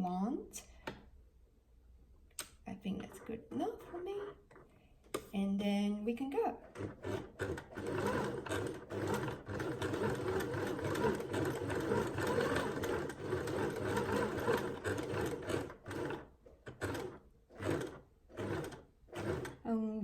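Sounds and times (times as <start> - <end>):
sewing machine stitching: 6.6 - 19.6.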